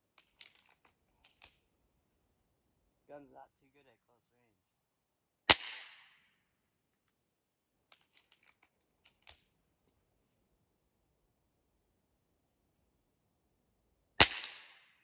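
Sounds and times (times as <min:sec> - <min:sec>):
air rifle clicks and clack: 0:00.1 - 0:01.6, 0:07.9 - 0:09.5
pellet rifle shot: 0:05.5 - 0:06.1, 0:14.2 - 0:14.8.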